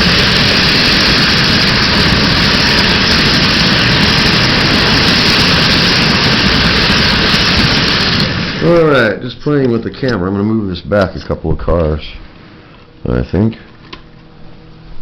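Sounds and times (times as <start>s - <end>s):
model train rumbling on track: 0.0s - 8.7s.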